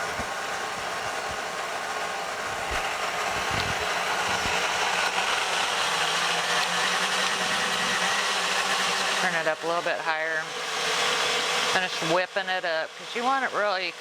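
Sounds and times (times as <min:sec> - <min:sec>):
electric mixer whirring: 0:00.0 - 0:14.0.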